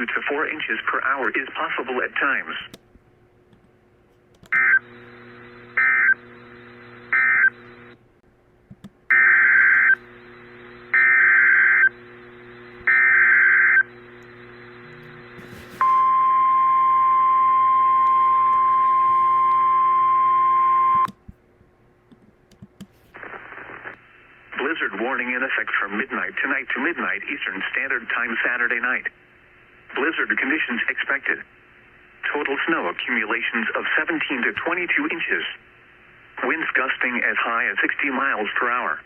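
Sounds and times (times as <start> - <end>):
steady attention tone: 9.1 - 21.1.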